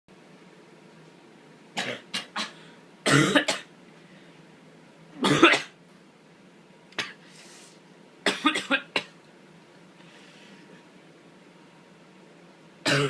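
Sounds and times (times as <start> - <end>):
person's catching breaths: 7.2 - 7.8, 10.0 - 10.8.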